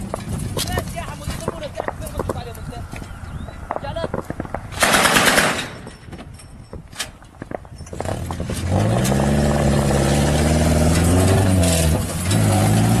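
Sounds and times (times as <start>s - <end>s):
knocks and clatter: 0.0s - 2.4s, 3.7s - 13.0s
car engine revving: 8.0s - 13.0s.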